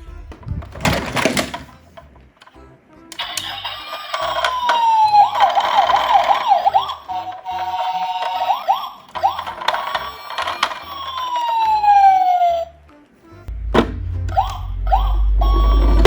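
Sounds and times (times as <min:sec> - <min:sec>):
toy sirens wailing and yelping: 0:03.1 - 0:12.8, 0:14.3 - 0:16.0.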